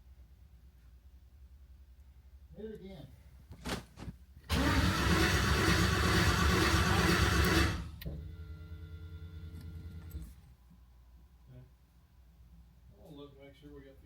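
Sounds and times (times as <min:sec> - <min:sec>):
engine cranking without starting: 0:04.5 - 0:08.1.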